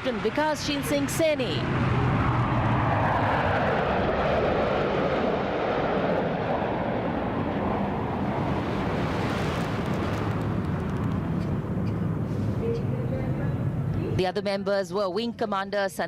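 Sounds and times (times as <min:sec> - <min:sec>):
fighter jets roaring past overhead: 0:00.0 - 0:14.2.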